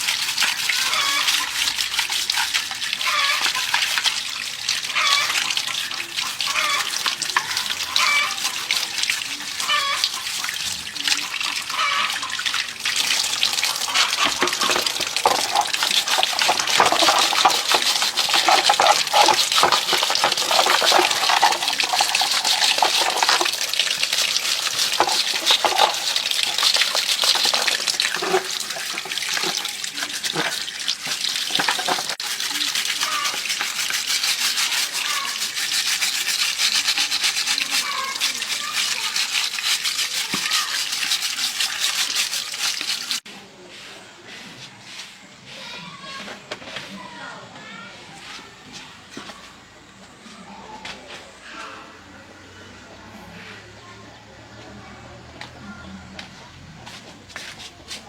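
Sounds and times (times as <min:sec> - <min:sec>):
water running and splashing: 0:00.0 - 0:43.3.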